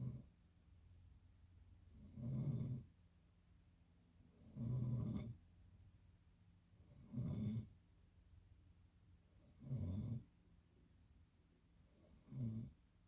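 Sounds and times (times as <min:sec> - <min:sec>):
quiet breathing: 0:00.0 - 0:00.5.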